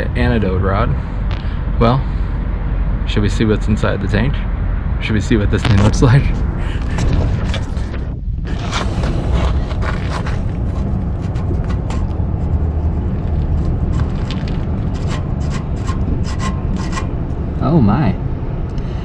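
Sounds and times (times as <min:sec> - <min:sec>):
steady low rumble: 0:00.0 - 0:19.0
metal clicks and scraping: 0:06.8 - 0:17.2.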